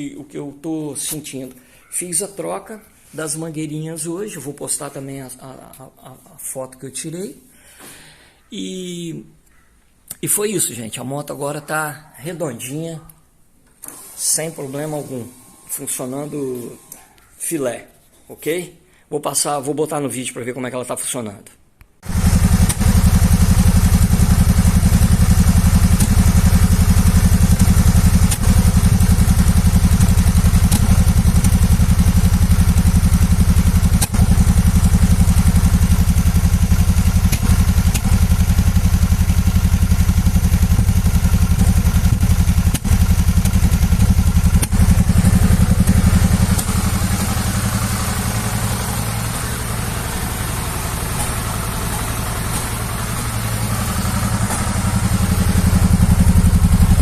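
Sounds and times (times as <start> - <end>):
motorcycle engine idling: 22.0 - 57.0.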